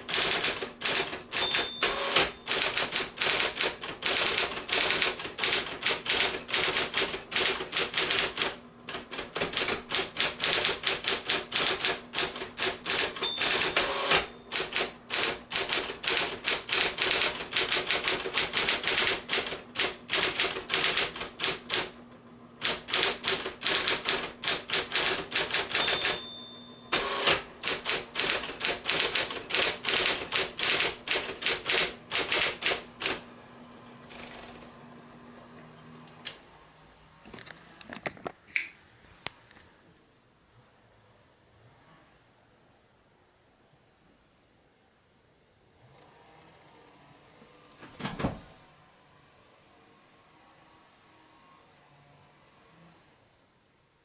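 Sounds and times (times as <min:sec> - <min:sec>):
typewriter key strikes: 0:00.0 - 0:22.0, 0:22.6 - 0:33.2
typewriter motor hum: 0:00.0 - 0:36.5.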